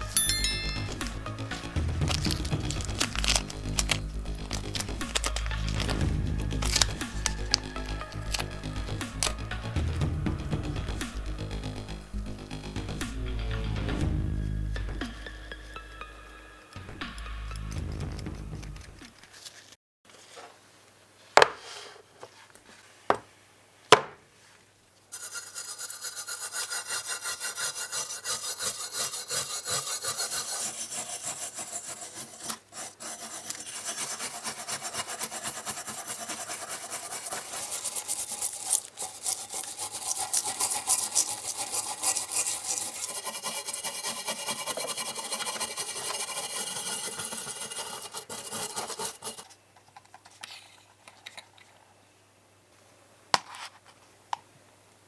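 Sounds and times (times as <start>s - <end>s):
abrasive scraping by hand: 25.1s - 49.6s.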